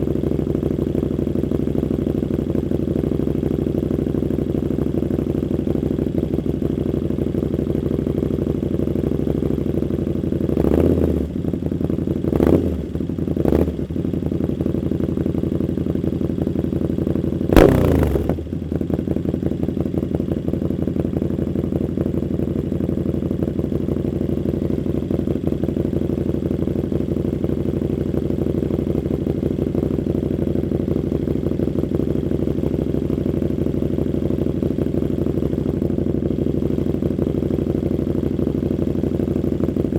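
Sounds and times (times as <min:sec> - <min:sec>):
motorcycle engine idling: 0:00.0 - 0:39.9
exhaust crack: 0:17.4 - 0:19.0.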